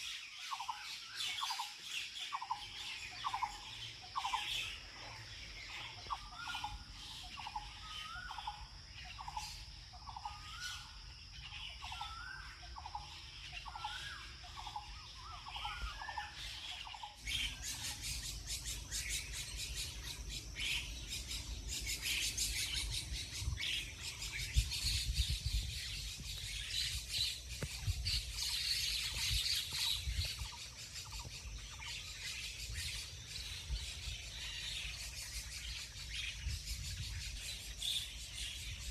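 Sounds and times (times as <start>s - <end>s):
dense high-pitched chirping: 0.0s - 38.9s
high twittering birds: 0.0s - 38.9s.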